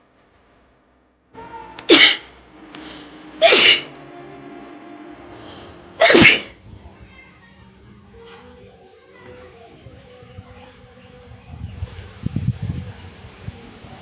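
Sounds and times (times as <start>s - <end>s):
woman sneezing: 1.8s - 2.3s, 3.4s - 3.9s, 6.0s - 6.5s.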